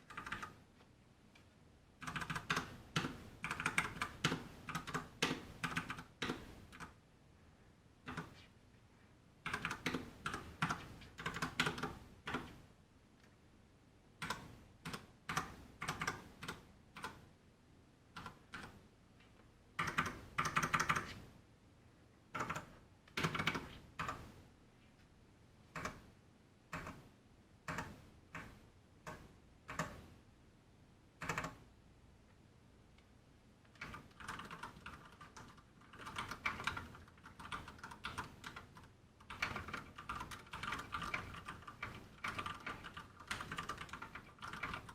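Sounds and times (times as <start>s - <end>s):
mechanical keyboard typing: 0.0s - 0.6s, 2.0s - 7.0s, 9.4s - 12.6s, 14.2s - 17.2s, 18.2s - 18.8s, 19.8s - 21.2s, 22.3s - 24.3s, 25.8s - 26.0s, 26.7s - 27.0s, 27.7s - 30.0s, 31.2s - 31.6s, 33.7s - 44.9s.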